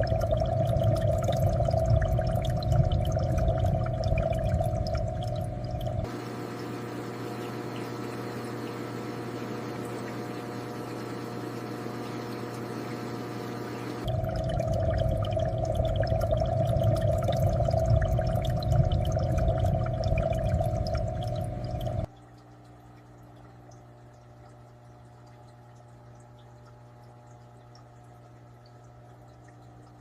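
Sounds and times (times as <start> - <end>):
bubble pops and drips: 0.0 - 6.8, 14.0 - 30.0
aquarium water trickling and bubbling: 0.0 - 30.0
steady low hum: 0.0 - 30.0.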